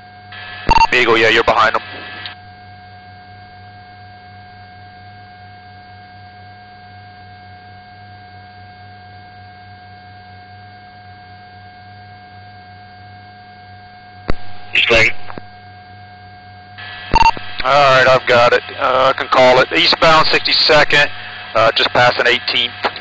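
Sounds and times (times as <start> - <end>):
low hum and hiss: 0.4 - 2.4, 14.3 - 15.7, 16.8 - 23.0
steady high tone: 14.3 - 15.5, 16.8 - 22.7.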